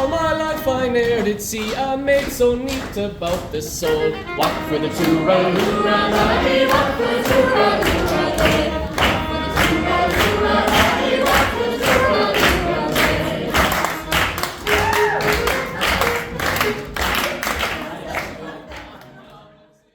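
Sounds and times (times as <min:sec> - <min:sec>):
group singing folk song: 0:00.0 - 0:19.8
steady beat of strokes: 0:01.0 - 0:19.1.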